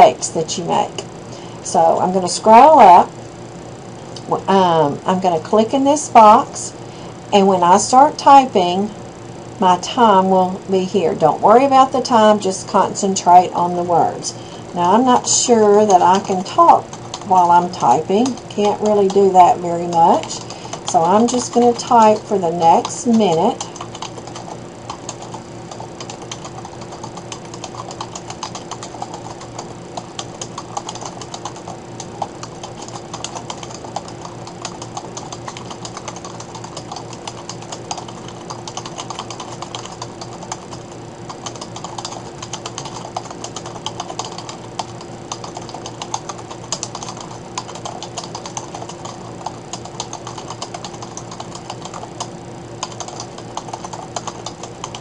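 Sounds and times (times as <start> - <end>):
low electrical hum: 0.0 - 55.0
fast typing on keyboard: 14.8 - 55.0.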